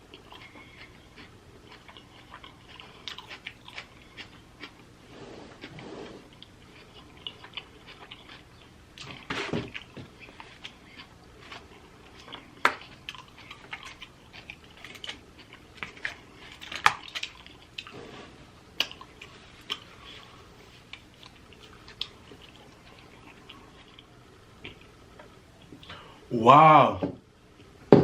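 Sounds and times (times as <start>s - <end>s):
chewing clicks and smacks: 0.1s - 4.8s, 5.6s - 17.9s, 18.8s - 19.9s, 20.9s - 24.9s.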